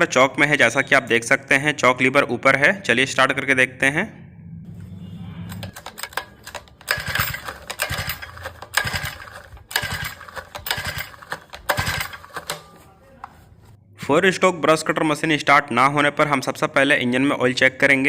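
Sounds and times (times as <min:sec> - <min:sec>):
engine cranking with rattling whir: 0:05.6 - 0:12.7.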